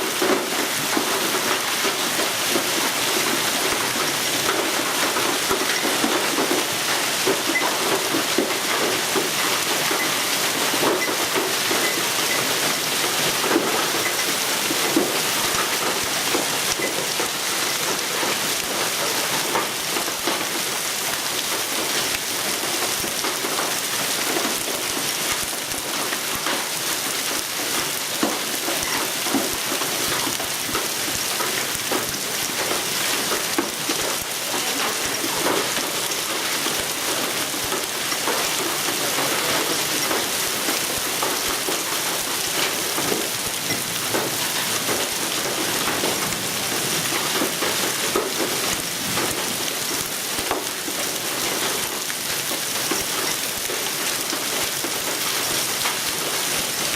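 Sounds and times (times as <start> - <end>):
heavy rain and hail: 0.0 - 56.9.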